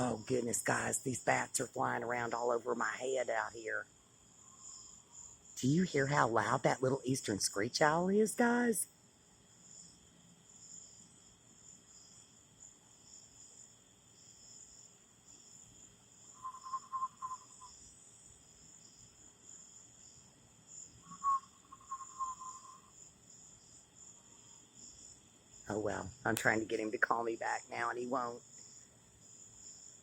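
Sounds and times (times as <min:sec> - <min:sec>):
crickets and insects chirping: 0:00.0 - 0:30.0
wavering owl-like trills: 0:16.2 - 0:17.9, 0:21.0 - 0:23.0.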